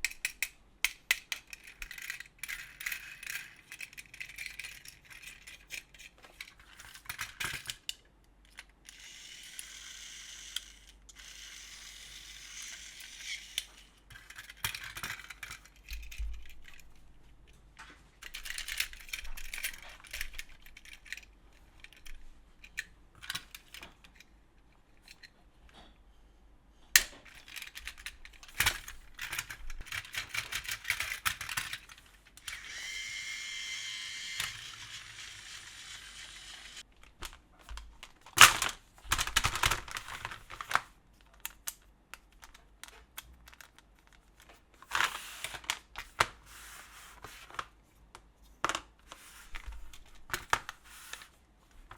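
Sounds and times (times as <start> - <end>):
toy train clicking and clattering: 0.0 - 16.8, 18.2 - 24.2, 27.0 - 40.8
toy motors whirring: 0.2 - 7.9, 8.8 - 16.8, 27.3 - 37.3.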